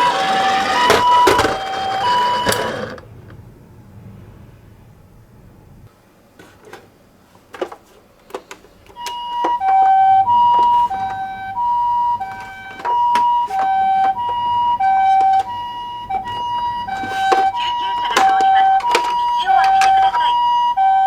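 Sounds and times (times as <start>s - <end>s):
toy two-tone ambulance siren: 0.0s - 3.0s, 8.9s - 21.0s.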